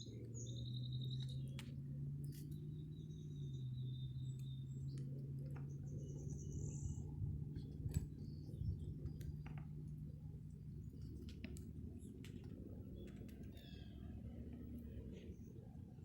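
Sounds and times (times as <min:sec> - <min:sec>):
small birds chirping: 0:00.0 - 0:09.7, 0:12.8 - 0:14.2.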